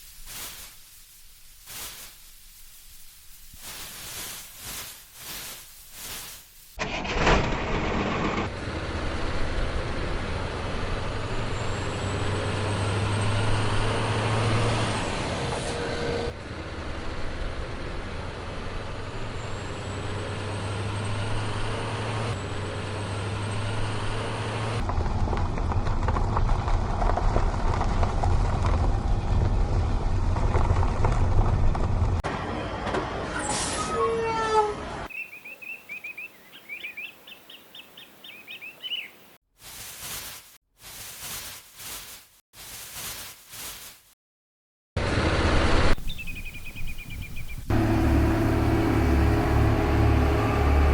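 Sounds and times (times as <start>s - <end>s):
chirps: 35.1s - 39.4s, 46.0s - 47.7s
truck engine running: 47.7s - 50.9s.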